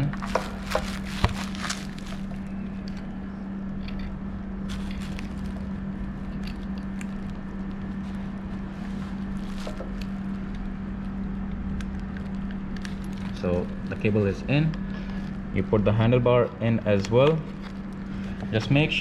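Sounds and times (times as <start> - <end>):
handling clicks and rustles: 0.0 - 3.1
steady low hum: 0.0 - 19.0.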